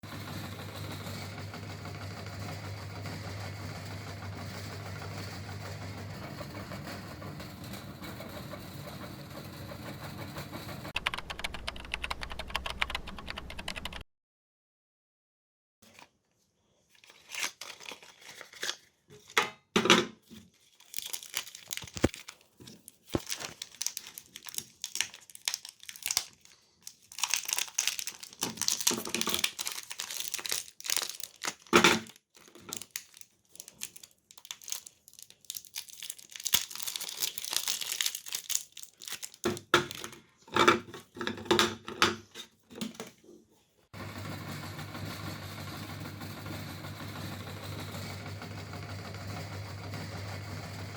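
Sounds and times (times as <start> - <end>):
meat grinder motor humming: 0.0 - 10.9, 44.0 - 50.9
packaging crinkling and tearing: 16.9 - 19.4, 20.2 - 40.4.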